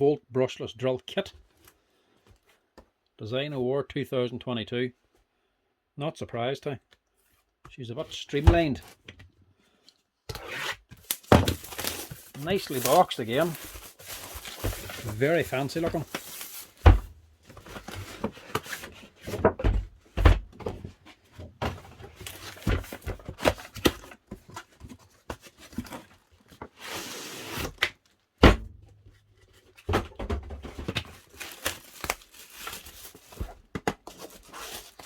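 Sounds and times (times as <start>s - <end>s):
box knocks and thuds: 8.4s - 8.8s, 16.8s - 18.4s, 19.3s - 22.0s, 28.4s - 28.8s, 29.8s - 31.1s
packaging rustling slide: 10.3s - 16.8s, 31.1s - 35.0s.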